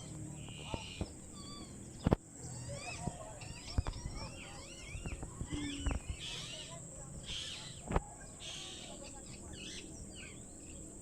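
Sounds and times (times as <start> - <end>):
parakeets whistled chirps: 0.0 - 7.8.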